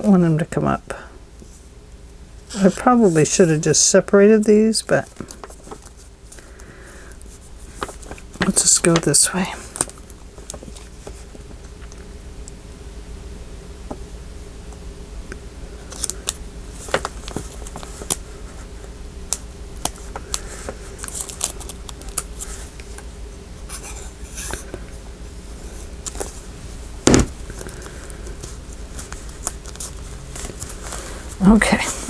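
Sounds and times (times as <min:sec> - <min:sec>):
hands handling paper: 0:07.3 - 0:11.2, 0:16.0 - 0:18.2
loud knock: 0:27.1 - 0:27.5.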